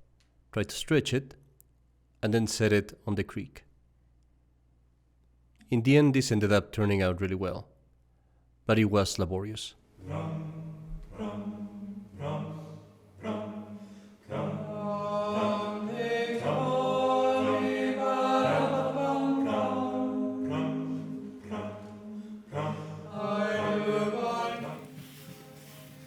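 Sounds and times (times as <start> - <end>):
voices singing a slow chant: 9.9 - 26.0.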